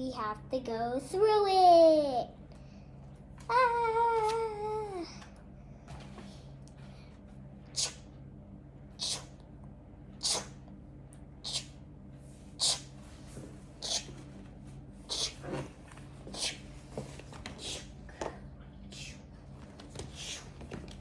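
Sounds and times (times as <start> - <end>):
breathy hissing mouth noises: 7.7 - 8.1, 9.0 - 9.4, 10.2 - 10.6, 11.4 - 11.8, 12.6 - 12.9, 13.8 - 14.1, 15.1 - 15.4, 16.3 - 16.6.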